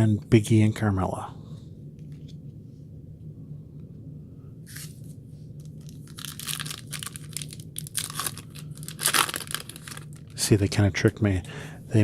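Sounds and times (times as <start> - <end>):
foil wrapper crinkling and tearing: 5.6 - 10.4
foil wrapper rustling: 5.6 - 10.4.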